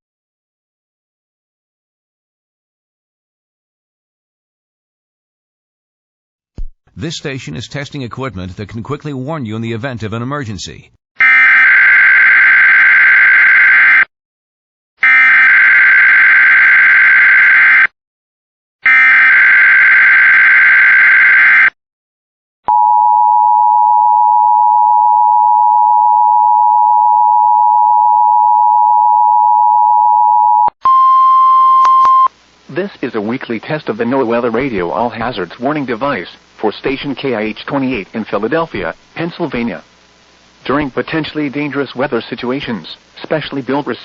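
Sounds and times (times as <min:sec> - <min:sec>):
single steady tone: 0:22.7 - 0:32.3.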